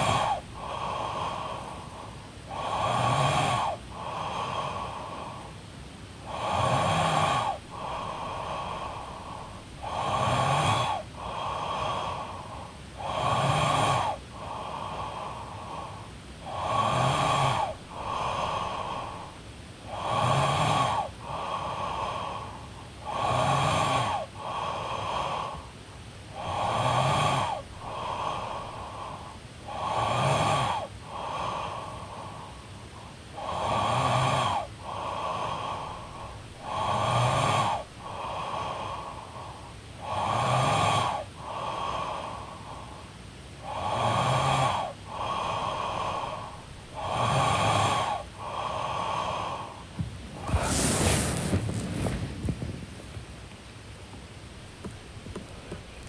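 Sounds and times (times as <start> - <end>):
woman snoring: 2.5 - 5.3, 6.3 - 12.4, 13.0 - 15.7, 16.5 - 22.4, 23.1 - 25.6, 26.4 - 32.0, 33.4 - 39.1, 43.7 - 51.8.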